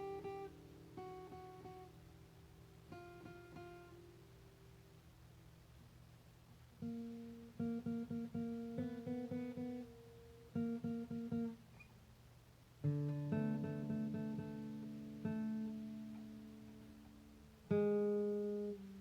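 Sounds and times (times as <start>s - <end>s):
guitar strumming chords: 0.0s - 2.0s, 2.9s - 4.1s, 6.8s - 11.6s, 12.8s - 19.0s.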